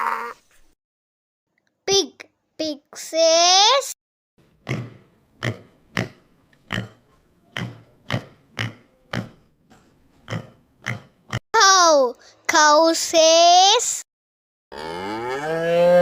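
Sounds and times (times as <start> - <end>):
pig grunting: 4.6 - 9.5, 10.3 - 11.4.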